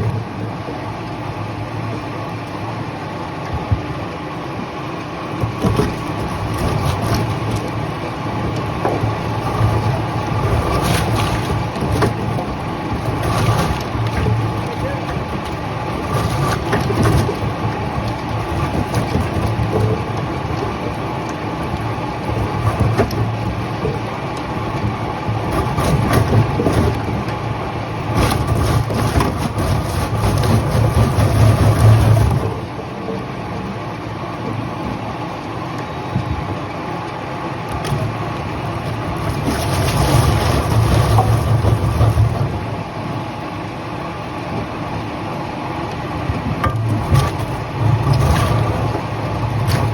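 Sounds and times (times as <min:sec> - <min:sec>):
sawmill machinery humming: 0:00.1 - 0:49.9.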